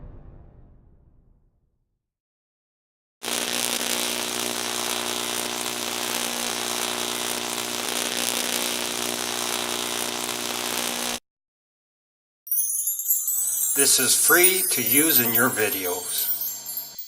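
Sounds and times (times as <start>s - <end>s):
electrical buzz with crackling: 3.2s - 11.2s.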